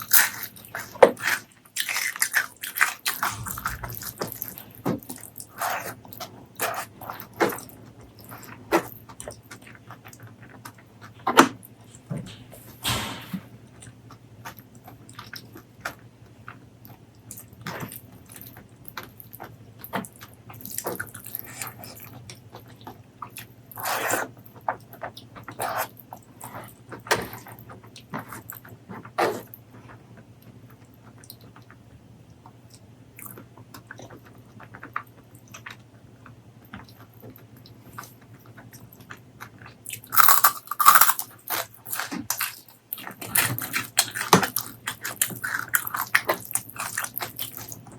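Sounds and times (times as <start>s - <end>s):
chewing and crunching food: 0.0s - 12.4s, 13.6s - 47.9s
faint low hum: 3.1s - 5.2s.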